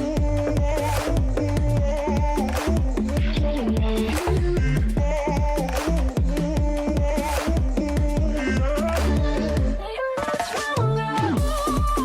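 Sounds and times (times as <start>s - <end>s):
deep kick drums: 0.0s - 9.8s.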